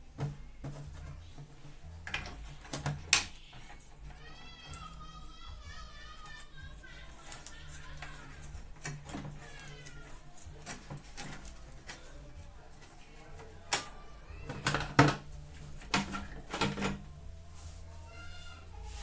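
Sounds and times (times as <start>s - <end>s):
faint voices: 0.0s - 19.0s
clicks and knocks from handling parts: 0.2s - 4.9s, 7.2s - 17.1s
low steady hum: 10.4s - 19.0s.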